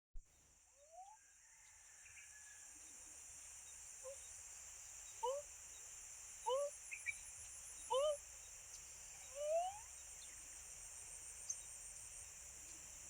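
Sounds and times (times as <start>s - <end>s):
animal whoop-like calls: 9.3s - 9.8s.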